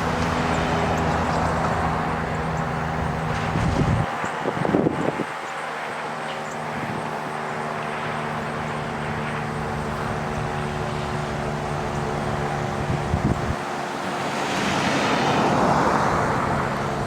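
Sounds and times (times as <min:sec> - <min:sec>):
wind on microphone: 0:00.0 - 0:05.4, 0:11.7 - 0:13.6.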